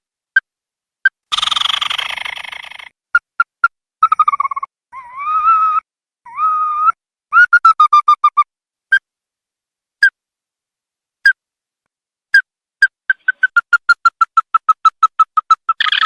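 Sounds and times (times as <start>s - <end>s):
crake calling: 12.8s - 16.0s.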